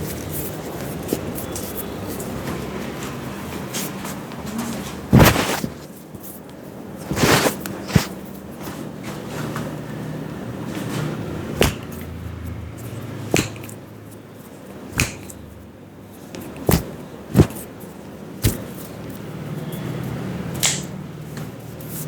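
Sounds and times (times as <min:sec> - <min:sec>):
hand slaps on head: 0:15.0 - 0:15.3.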